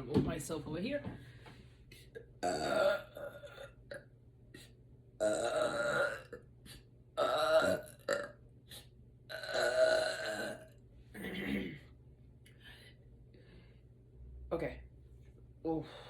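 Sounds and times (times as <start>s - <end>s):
woman burping: 2.1s - 4.1s, 5.2s - 6.5s, 7.2s - 8.4s, 9.3s - 11.9s.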